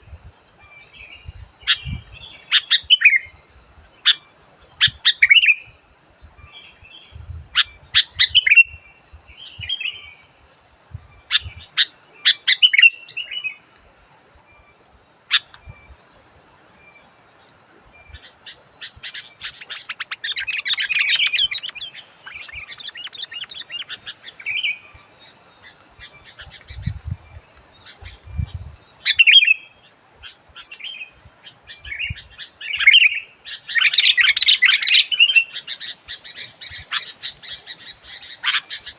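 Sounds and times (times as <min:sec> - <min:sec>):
bird chirping: 0:06.3 - 0:10.3, 0:11.1 - 0:13.6, 0:16.7 - 0:38.9
bird rapid chattering: 0:18.2 - 0:24.4.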